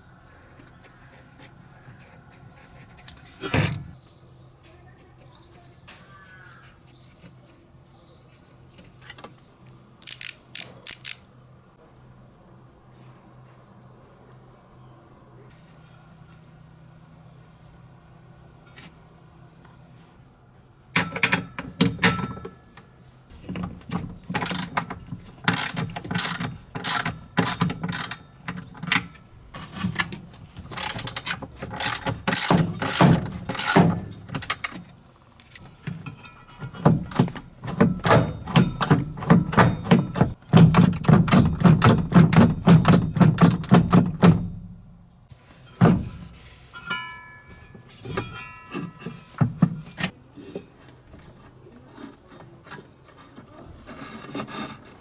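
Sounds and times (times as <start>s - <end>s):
rapid metallic clicks and knocks: 10.0s - 11.3s, 23.4s - 44.6s.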